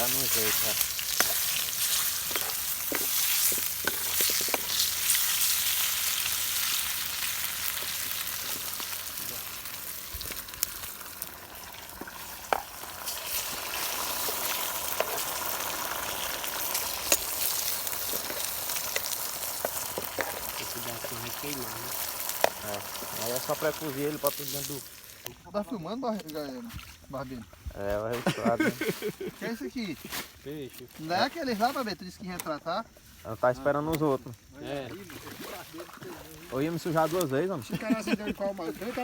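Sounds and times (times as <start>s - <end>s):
pork frying in hot fat: 0.0s - 39.0s.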